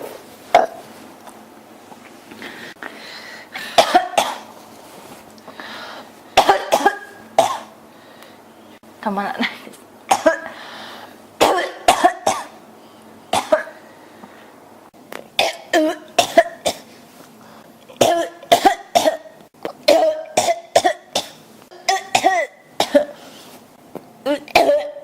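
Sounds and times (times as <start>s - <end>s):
person coughing: 0.5s - 0.8s, 3.6s - 4.5s, 6.4s - 7.7s, 10.1s - 10.5s, 11.4s - 12.6s, 13.3s - 13.8s, 15.4s - 16.9s, 18.0s - 19.3s, 19.9s - 23.2s, 24.2s - 25.0s.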